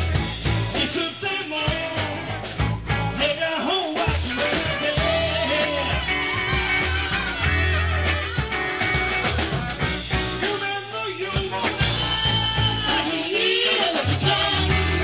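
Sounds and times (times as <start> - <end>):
drum kit: 0.0 - 15.0
electric bass: 0.0 - 15.0
guitars: 0.0 - 15.0
keyboard: 0.0 - 15.0
alto saxophone: 4.3 - 10.0.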